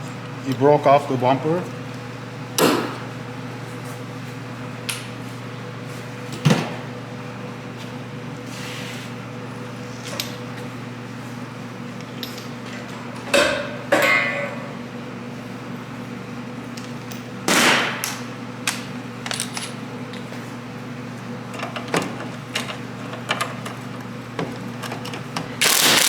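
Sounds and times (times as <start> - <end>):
metal tools clanking and scraping: 13.4 - 14.7.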